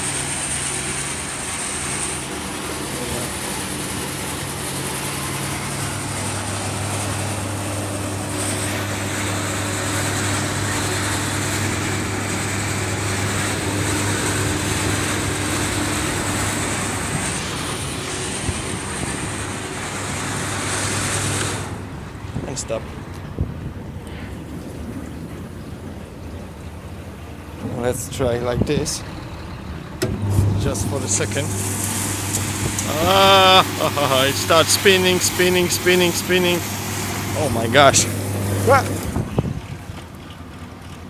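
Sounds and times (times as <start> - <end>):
electric pump humming: 0.0 - 22.7, 29.0 - 41.0
water spraying inside cabinet: 30.6 - 39.2.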